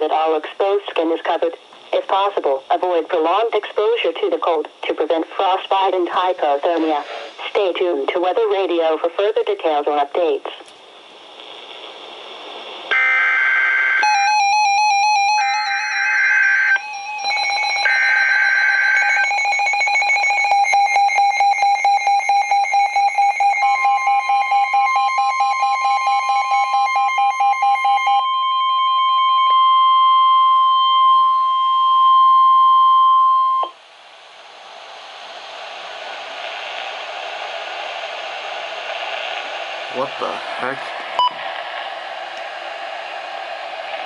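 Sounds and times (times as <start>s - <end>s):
radio static: 0.0s - 14.0s, 34.2s - 44.0s
steady warning alarm tone: 12.9s - 33.7s.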